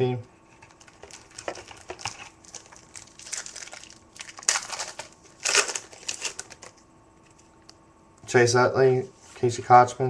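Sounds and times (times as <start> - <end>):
wrapper crinkling and rustling: 0.5 - 6.8.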